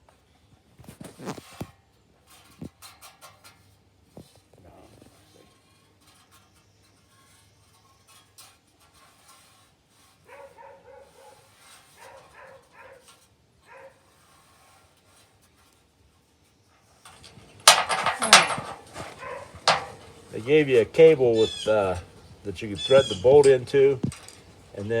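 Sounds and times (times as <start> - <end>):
dog barking: 10.3 - 13.1, 13.7 - 14.0, 19.1 - 19.7.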